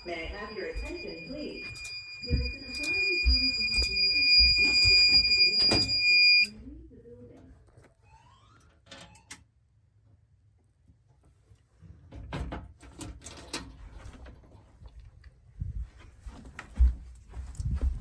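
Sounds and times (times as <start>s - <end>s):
low thumps: 0.0s - 6.5s.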